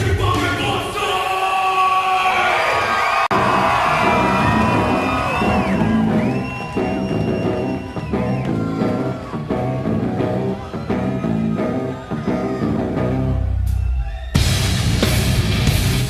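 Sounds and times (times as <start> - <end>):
sliding guitar line: 3.3 - 13.4
heavy rock band playing: 3.3 - 16.0.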